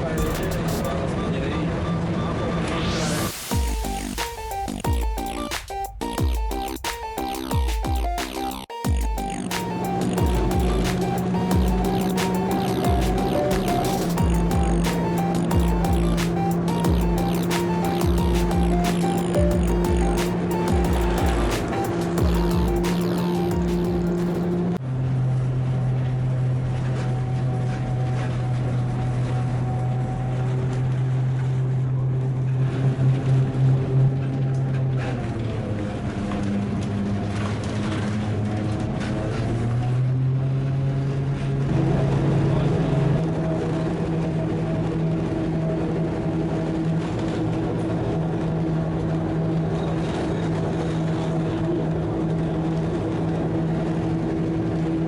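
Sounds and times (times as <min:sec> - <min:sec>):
vehicle running with low hum: 0:08.9 - 0:55.0
vehicle engine humming: 0:09.0 - 0:24.8.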